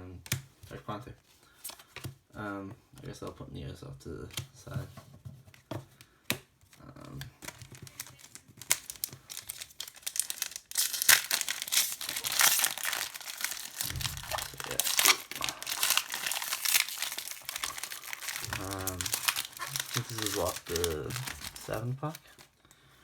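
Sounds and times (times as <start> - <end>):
foil wrapper crinkling: 7.4 - 22.6.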